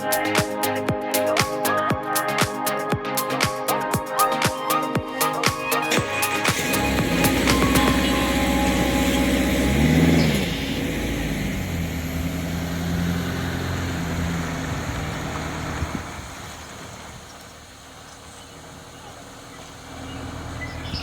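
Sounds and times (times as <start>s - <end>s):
car engine running: 6.0s - 21.0s.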